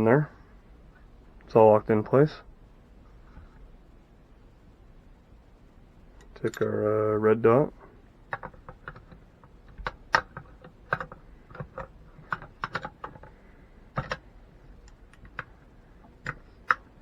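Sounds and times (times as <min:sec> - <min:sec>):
sharp clicks and light knocks: 0:08.2 - 0:17.0.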